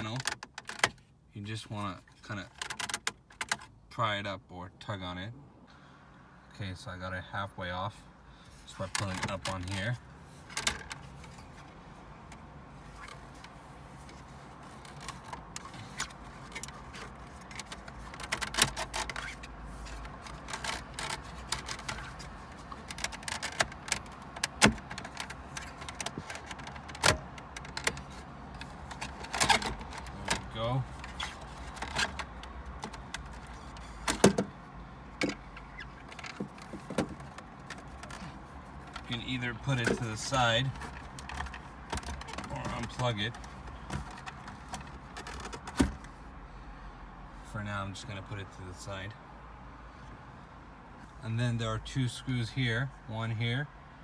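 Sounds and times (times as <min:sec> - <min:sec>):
plastic clips rattling: 0:14.7 - 0:34.5, 0:35.2 - 0:46.0.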